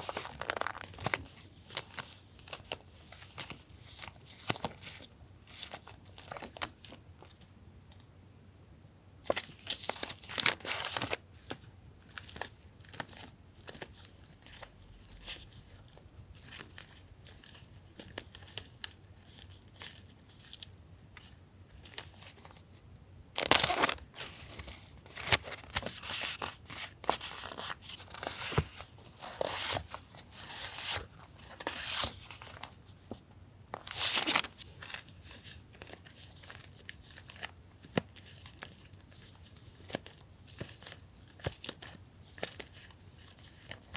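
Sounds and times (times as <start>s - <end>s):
paper rustling and crinkling: 0.0s - 7.0s, 23.4s - 43.9s.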